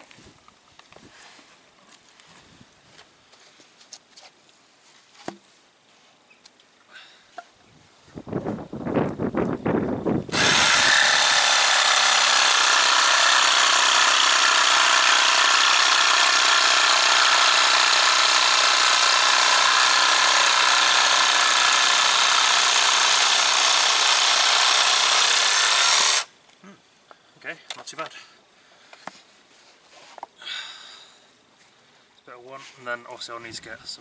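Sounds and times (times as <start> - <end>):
jigsaw cutting metal: 10.3 - 26.3.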